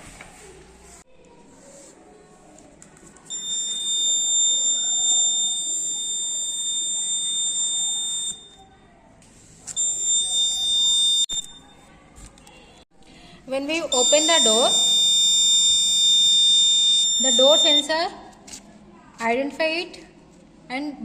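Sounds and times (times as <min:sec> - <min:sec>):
high-pitched alarm buzzer: 0:03.3 - 0:08.6, 0:09.8 - 0:11.7, 0:13.9 - 0:17.9.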